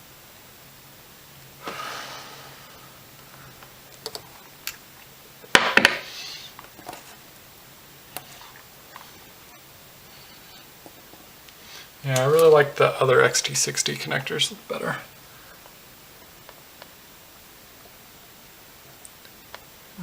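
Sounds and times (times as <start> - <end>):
brief hisses: 1.6 - 2.7.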